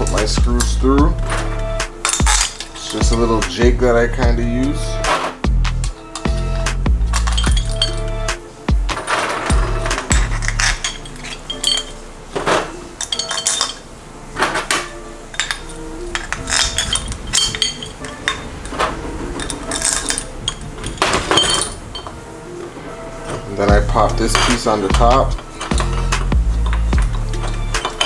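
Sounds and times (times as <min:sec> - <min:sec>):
steel pieces and screws clinking: 0:00.0 - 0:28.0.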